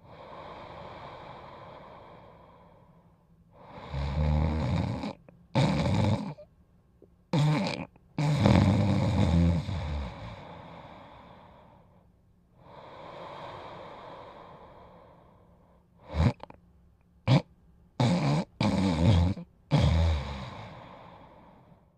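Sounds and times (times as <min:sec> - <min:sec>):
soft drawn-out breath: 0:00.0 - 0:04.1, 0:09.6 - 0:16.1, 0:19.8 - 0:21.9
dog snoring: 0:03.6 - 0:06.5, 0:07.3 - 0:11.7, 0:16.0 - 0:16.6, 0:17.2 - 0:21.8.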